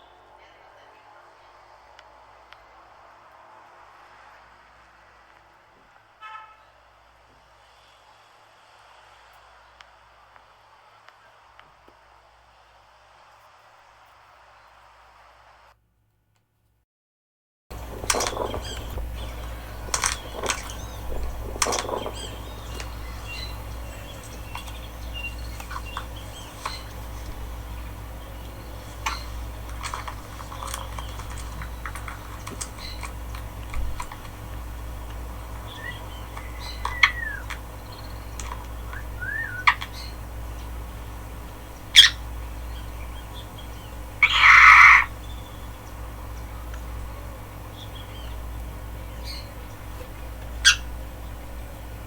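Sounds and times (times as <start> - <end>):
small birds chirping: 0.0 - 10.6, 17.7 - 52.0
sharp clicks: 17.7 - 41.0
steady low rumble: 17.7 - 52.0
bird whistle: 18.2 - 27.4, 35.5 - 40.2, 41.9 - 45.8, 50.6 - 50.9.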